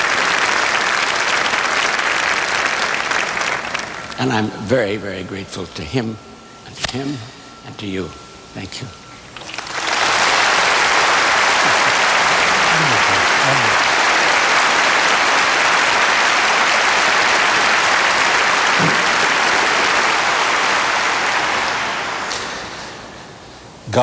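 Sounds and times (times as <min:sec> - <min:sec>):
audience applauding: 0:00.0 - 0:04.4, 0:09.4 - 0:23.2.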